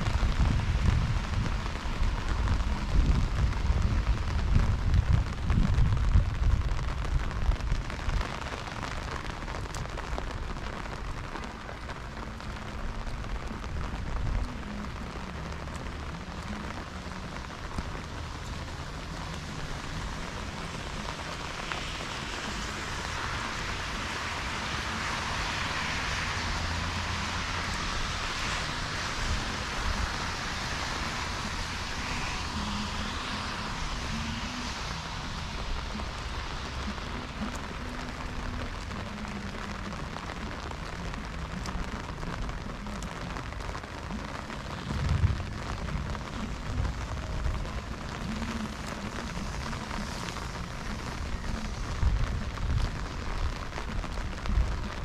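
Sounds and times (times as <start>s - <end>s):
low rumbles: 0.0s - 22.6s, 34.2s - 55.0s
heavy rain hissing: 0.0s - 55.0s.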